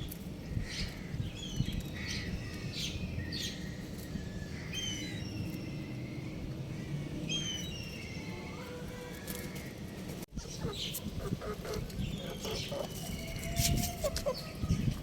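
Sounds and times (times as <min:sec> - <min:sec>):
young rooster chirping: 0:10.4 - 0:15.0.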